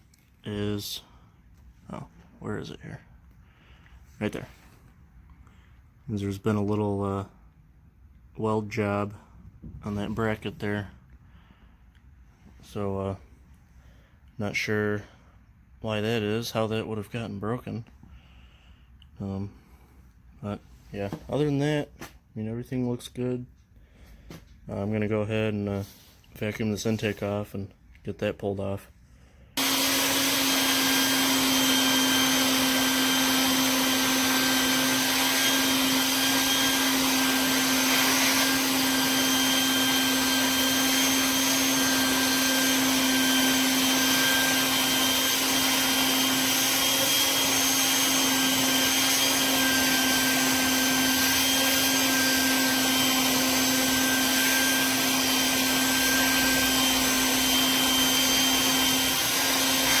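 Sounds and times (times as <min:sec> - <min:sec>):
vacuum cleaner running: 0:29.6 - 1:00.0.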